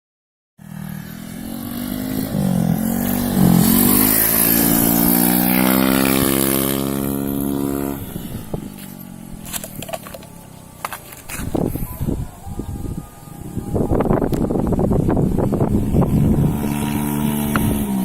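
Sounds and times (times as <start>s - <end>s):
scooter engine revving: 0.6s - 11.6s, 15.2s - 18.0s.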